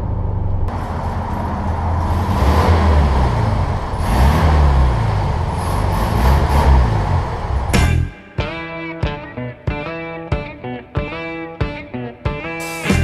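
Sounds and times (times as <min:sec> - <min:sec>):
car engine revving while driving: 0:00.7 - 0:07.8.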